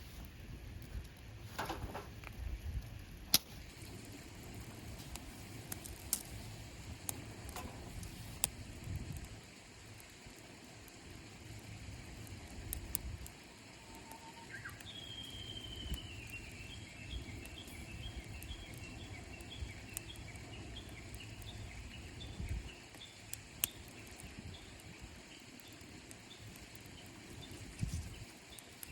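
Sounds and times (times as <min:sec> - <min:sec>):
bush warbler singing: 0:14.0 - 0:25.4.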